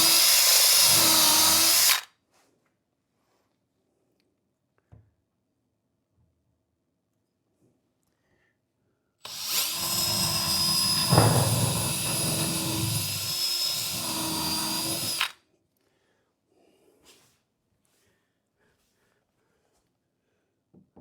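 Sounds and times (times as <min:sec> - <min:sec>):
power drill boring into board: 0:00.0 - 0:02.1, 0:09.2 - 0:15.4.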